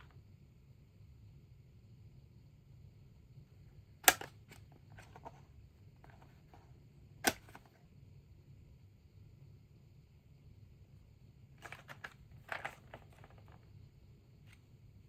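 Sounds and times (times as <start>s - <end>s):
sharp clicks: 4.0s - 5.4s, 7.2s - 7.7s.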